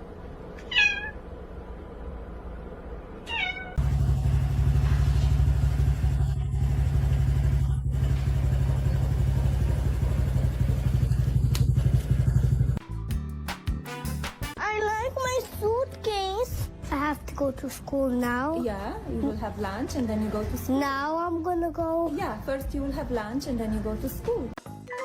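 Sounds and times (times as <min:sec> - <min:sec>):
cat meowing: 0:00.6 - 0:01.2, 0:03.2 - 0:03.8
loud steady low rumble: 0:03.8 - 0:12.8.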